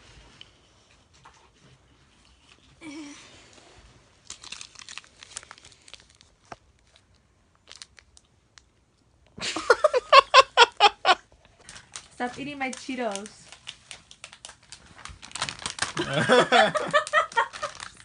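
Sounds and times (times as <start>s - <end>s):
snack packaging crinkling: 4.2s - 8.8s, 11.5s - 18.0s
loud pulsing laughter: 16.0s - 17.8s.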